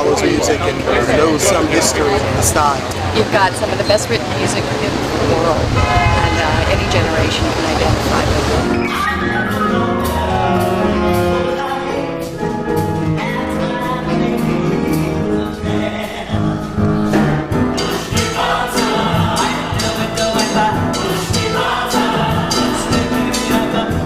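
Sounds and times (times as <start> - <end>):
voices singing sustained notes: 0.0 - 17.0, 17.7 - 24.0
band playing: 0.0 - 24.0
drum and cymbal beat: 17.6 - 24.0.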